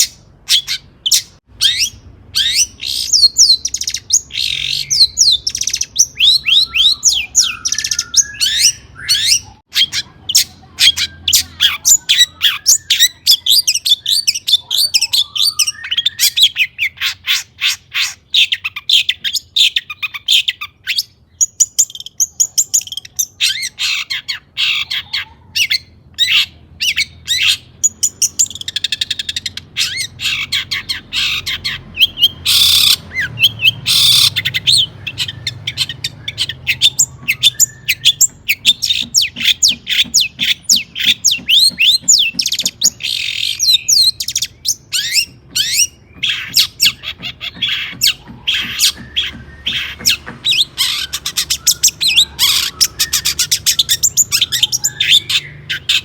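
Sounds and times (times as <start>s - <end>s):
bird chattering song: 0.0s - 56.0s
bird rasping screeches: 28.9s - 55.4s.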